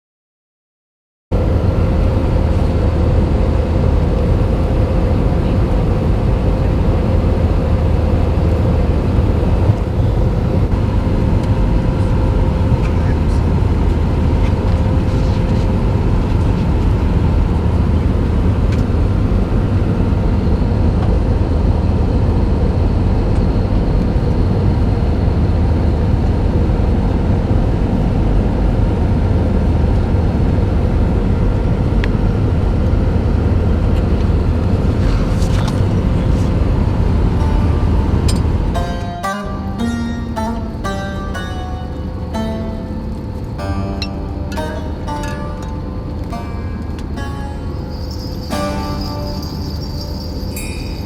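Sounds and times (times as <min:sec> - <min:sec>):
airplane cabin engine rumble: 0:01.4 - 0:24.8, 0:28.9 - 0:39.1
faint steady hum: 0:28.2 - 0:51.0.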